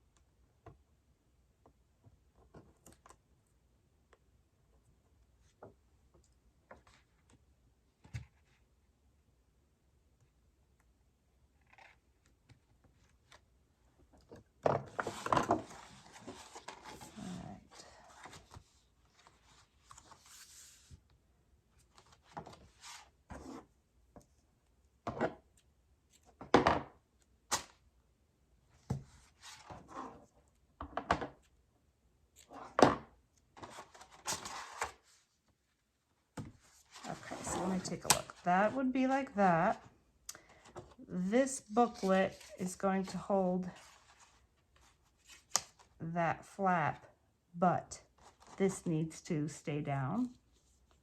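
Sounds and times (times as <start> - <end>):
paper rustling and sliding: 15.0 - 17.4, 18.0 - 21.0, 36.6 - 38.4.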